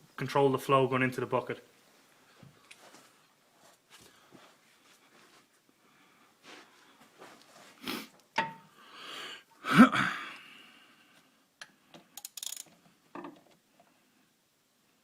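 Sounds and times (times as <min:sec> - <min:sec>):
socket wrench clinking on metal: 0:12.2 - 0:12.7.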